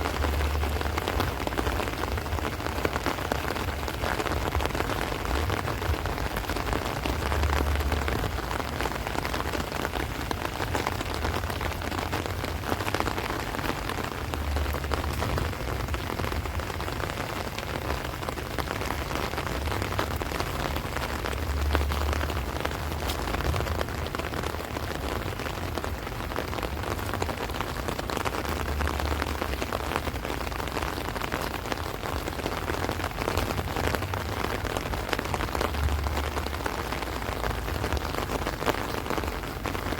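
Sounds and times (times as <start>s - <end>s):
heavy rain on plants and trees: 0.0s - 39.9s
low rumble: 0.0s - 39.9s.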